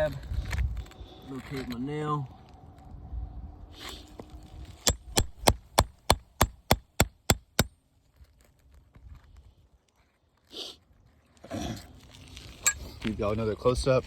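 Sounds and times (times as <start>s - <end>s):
hammer tapping: 4.9s - 7.7s.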